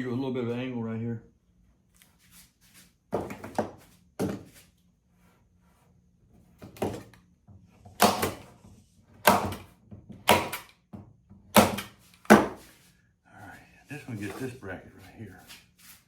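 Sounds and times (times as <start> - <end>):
sharp knocks and thunks: 11.6 - 12.6.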